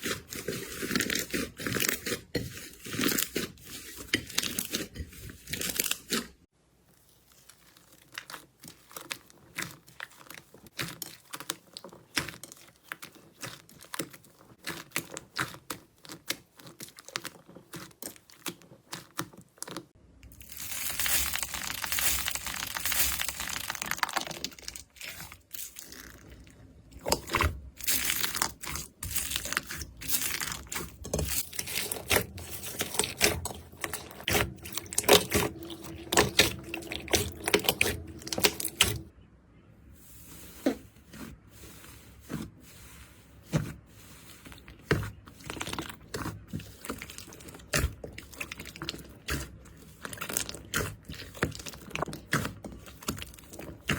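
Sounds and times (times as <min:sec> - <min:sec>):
slime crackling and popping: 0:20.2 - 0:39.1, 0:45.4 - 0:53.9.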